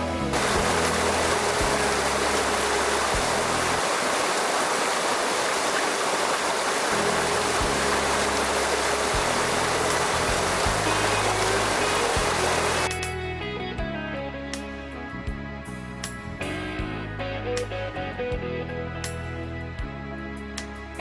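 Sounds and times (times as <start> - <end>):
low background music: 0.0 - 4.4, 6.6 - 21.0
mountain stream rushing: 0.0 - 12.9.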